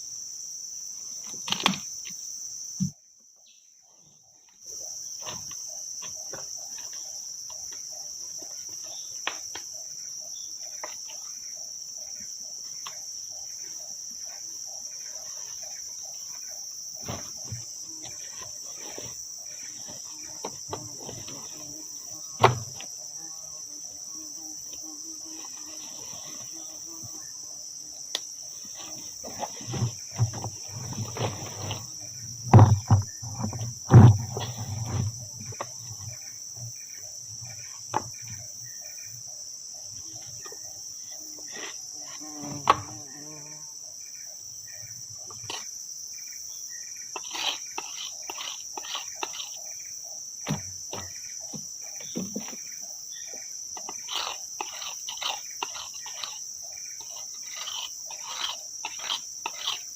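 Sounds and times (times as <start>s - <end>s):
high-pitched insect chorus: 0.0s - 59.9s
rustles and knocks: 28.7s - 36.7s, 50.4s - 52.8s.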